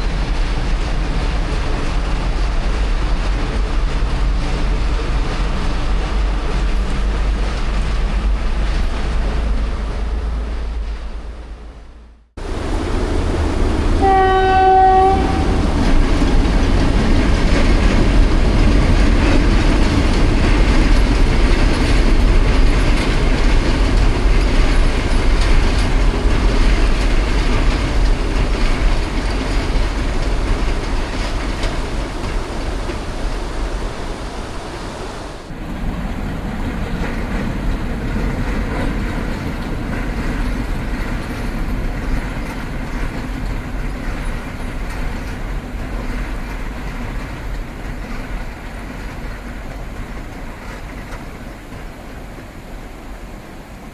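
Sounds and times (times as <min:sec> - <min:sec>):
train rumbling on rails: 0:00.0 - 0:53.9
train horn: 0:12.5 - 0:16.3.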